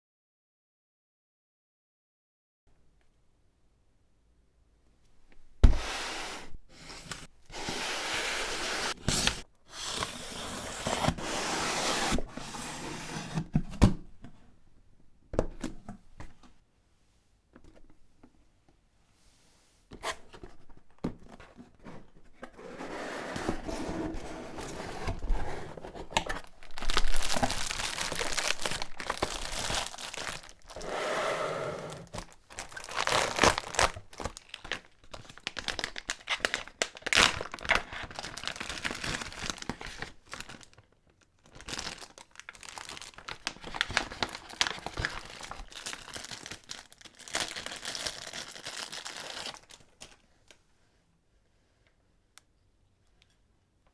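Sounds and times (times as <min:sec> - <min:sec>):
packaging crinkling and tearing: 0:08.9 - 0:10.0, 0:26.1 - 0:30.9, 0:31.9 - 0:50.2.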